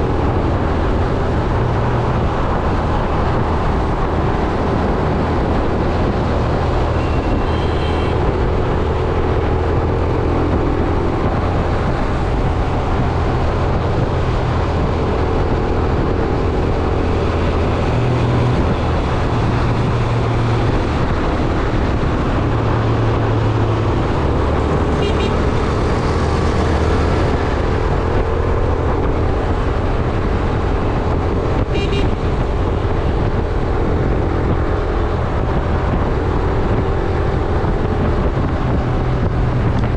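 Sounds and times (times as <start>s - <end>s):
wind on microphone: 0.0s - 39.9s
vehicle horns honking: 7.0s - 8.3s, 24.9s - 25.5s, 31.7s - 32.4s.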